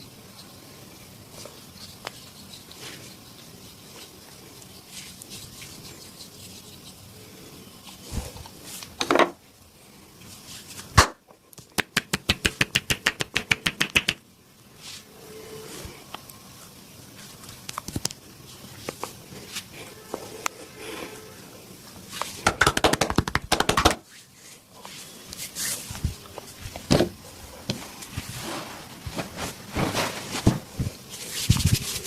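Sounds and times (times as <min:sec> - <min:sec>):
hands slapping and tapping skin: 0:11.6 - 0:14.2, 0:17.6 - 0:18.2, 0:22.4 - 0:24.0
rapid tapping strokes: 0:11.8 - 0:14.2, 0:22.2 - 0:24.1.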